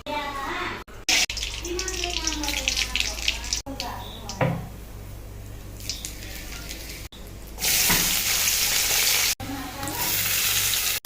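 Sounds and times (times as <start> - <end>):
food sizzling in hot oil: 1.1 - 3.7, 7.6 - 11.0.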